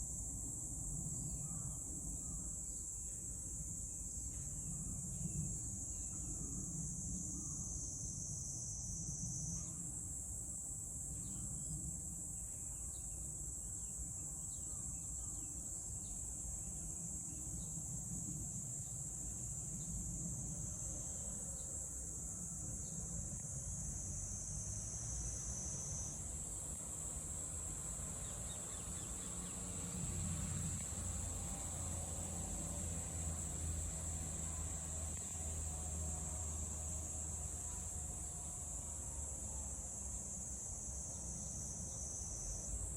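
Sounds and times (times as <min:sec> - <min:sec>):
cicada buzzing: 0:23.8 - 0:42.8.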